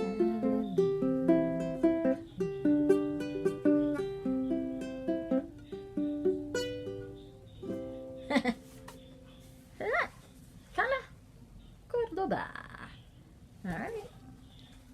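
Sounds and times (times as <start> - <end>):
ukulele fingerpicked melody: 0.0 - 9.6.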